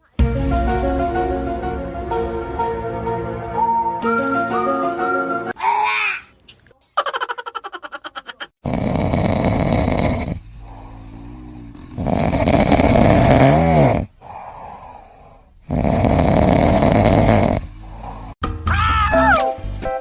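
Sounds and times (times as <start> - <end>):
pet snoring loudly: 8.6 - 18.4
quiet breathing: 10.1 - 12.2, 14.1 - 15.8, 17.4 - 18.4.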